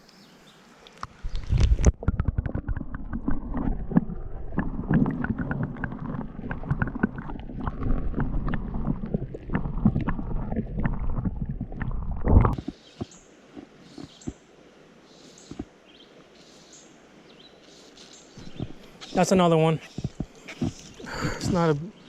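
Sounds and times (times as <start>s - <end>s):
microphone handling noise: 1.3s - 12.7s, 18.4s - 18.9s.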